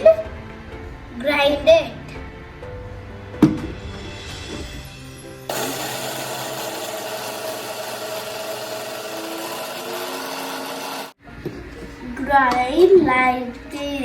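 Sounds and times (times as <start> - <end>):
mixer grinder motor whine: 5.5 - 11.2.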